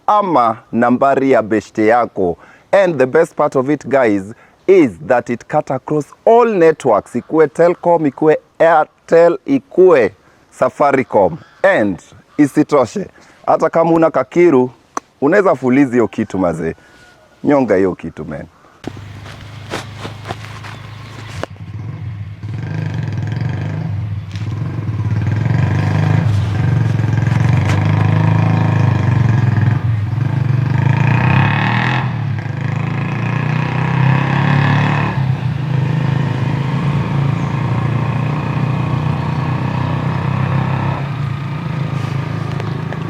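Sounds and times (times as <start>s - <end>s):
engine whine: 18.8s - 22.6s, 23.2s - 43.0s
vehicle engine running: 18.8s - 43.0s.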